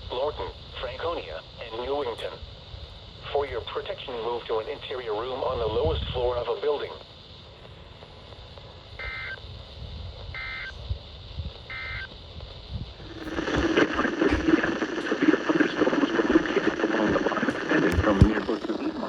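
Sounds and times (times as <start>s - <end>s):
two-tone data bursts: 9.0s - 9.4s, 10.3s - 10.8s, 11.6s - 12.2s
loud noisy voice-like sound: 13.1s - 19.0s.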